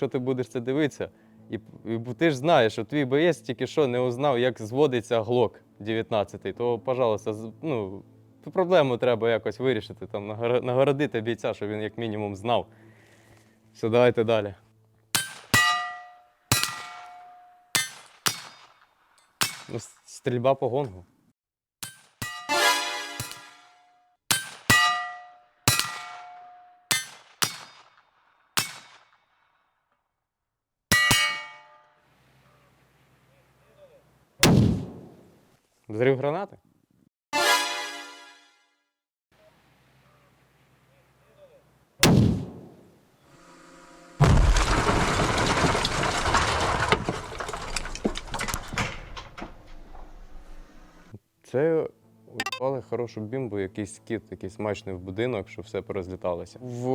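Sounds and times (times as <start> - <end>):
bullets striking steel gong: 15.2 - 18.6, 21.8 - 23.7, 24.3 - 27.9
debris and glass clattering: 44.2 - 50.2.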